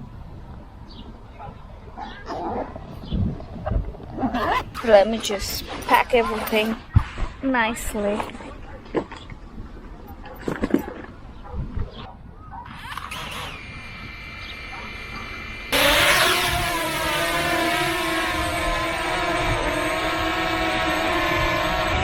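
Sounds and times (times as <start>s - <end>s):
drone propellers buzzing: 12.7s - 22.0s
thin steady whine: 12.8s - 22.0s.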